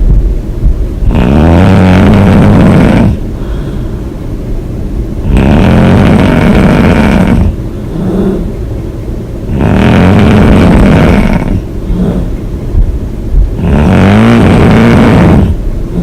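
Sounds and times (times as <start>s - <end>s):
woman snoring: 1.0s - 3.7s, 5.2s - 8.6s, 9.5s - 12.3s, 13.6s - 16.0s
quiet breathing: 2.5s - 4.3s, 6.4s - 8.8s, 10.3s - 12.5s.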